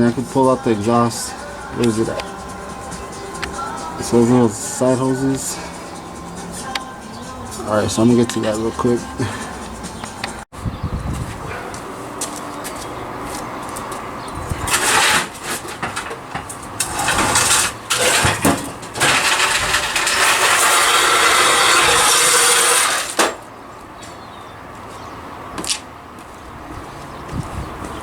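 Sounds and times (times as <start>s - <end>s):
metal exhaust parts scraping: 0.0s - 10.4s, 14.1s - 23.5s
hand tools knocking and clattering: 14.7s - 23.4s.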